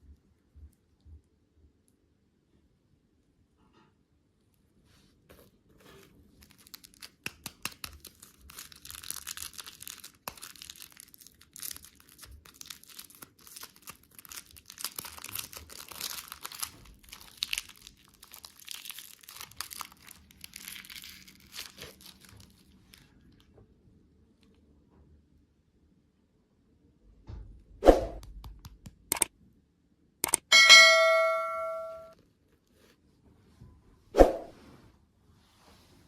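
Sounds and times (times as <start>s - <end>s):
candy wrapper crinkling: 6.3s - 23.5s.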